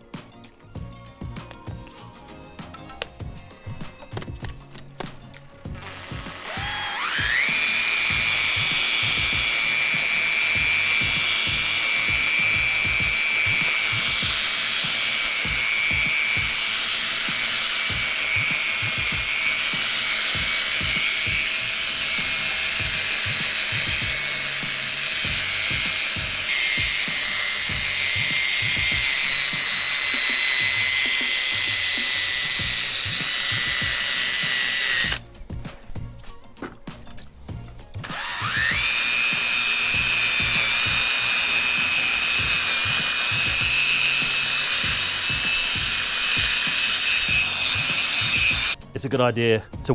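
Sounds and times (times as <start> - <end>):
electric drill sanding plastic whine: 0.0 - 49.9.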